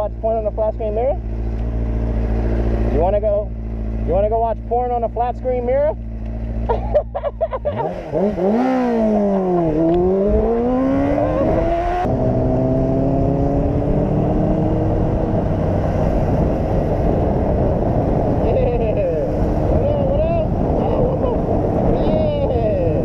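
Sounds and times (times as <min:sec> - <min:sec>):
motorcycle engine accelerating: 0:00.3 - 0:23.0.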